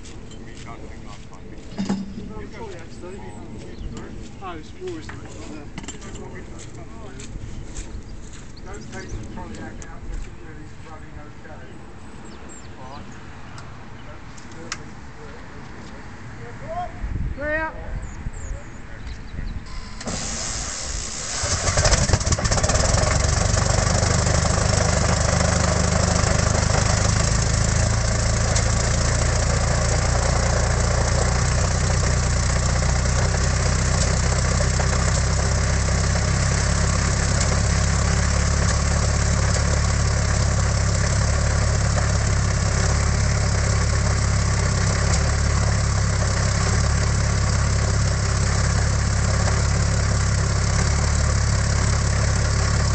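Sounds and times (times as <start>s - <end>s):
aircraft engine starting and running: 19.7s - 52.9s.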